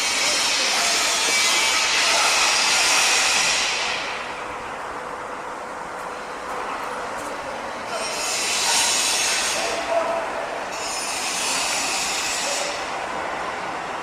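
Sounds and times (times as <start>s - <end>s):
loud rushing hiss: 0.0s - 4.4s.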